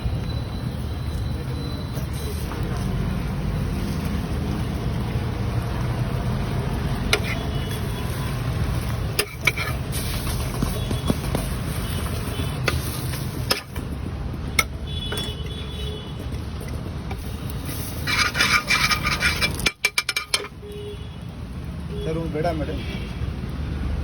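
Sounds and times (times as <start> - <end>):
low traffic rumble: 0.0 - 24.0
metal spatula scraping a griddle: 6.9 - 13.8, 17.2 - 20.6.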